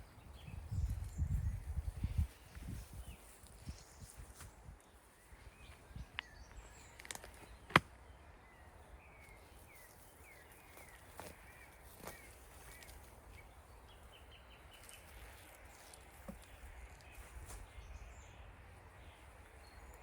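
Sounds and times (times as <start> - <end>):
birds chirping: 0.0 - 20.0
low outdoor background: 0.0 - 20.0.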